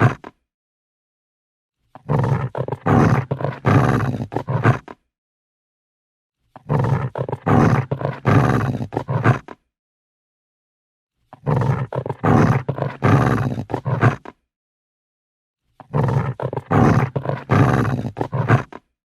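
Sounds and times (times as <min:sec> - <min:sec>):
dog growling: 0:00.0 - 0:00.3, 0:02.0 - 0:05.0, 0:06.6 - 0:09.6, 0:11.3 - 0:14.4, 0:15.8 - 0:18.9.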